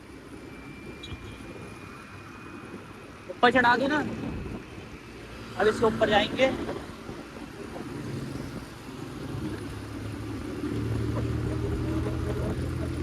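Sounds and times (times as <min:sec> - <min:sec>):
motorcycle engine running: 0:07.7 - 0:13.0.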